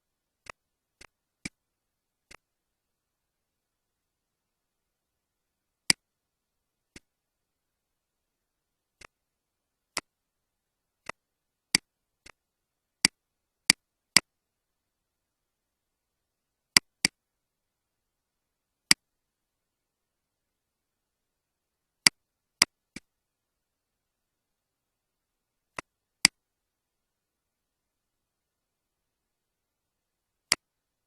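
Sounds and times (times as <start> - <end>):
computer mouse buttons clicking: 16.8 - 17.2, 22.0 - 23.1.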